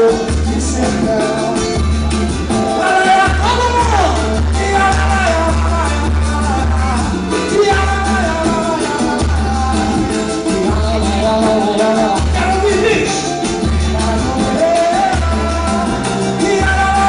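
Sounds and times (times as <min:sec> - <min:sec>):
deep bass beat: 0:00.0 - 0:17.0
live samba band playing: 0:00.0 - 0:17.0
voices singing: 0:00.0 - 0:17.0.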